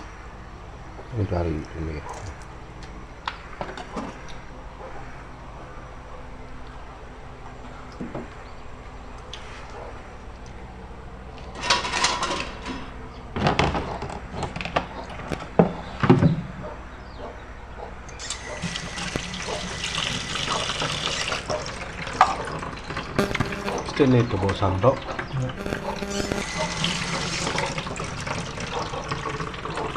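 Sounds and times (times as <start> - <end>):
pots and utensils clattering: 11.6 - 12.7
tap water running: 18.2 - 23.2, 26.4 - 29.9.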